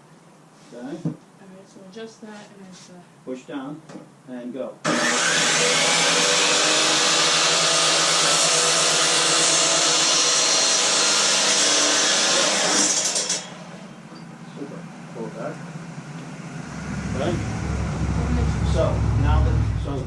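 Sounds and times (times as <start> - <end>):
miter saw cutting a board: 4.9 - 13.8.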